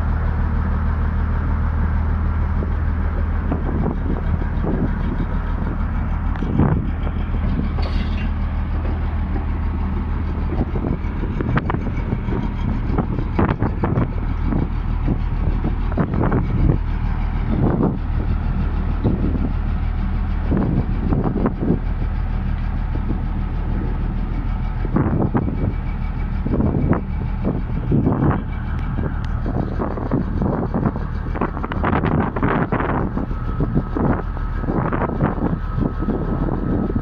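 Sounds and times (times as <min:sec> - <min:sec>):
bulldozer diesel engine running: 0:00.0 - 0:37.0
metal clanks and knocks: 0:06.3 - 0:14.1.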